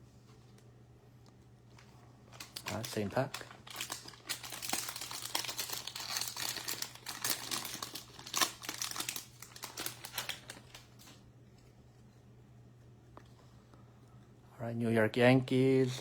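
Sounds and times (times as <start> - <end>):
foil wrapper crinkling and tearing: 1.8 - 11.2.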